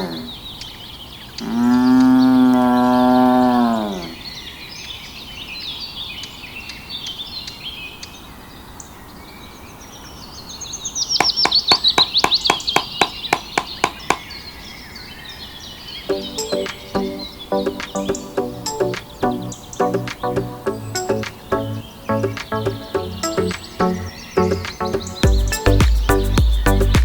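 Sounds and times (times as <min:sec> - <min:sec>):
songbirds chirping: 0:00.0 - 0:27.0
bird song of quick falling notes: 0:09.4 - 0:27.0.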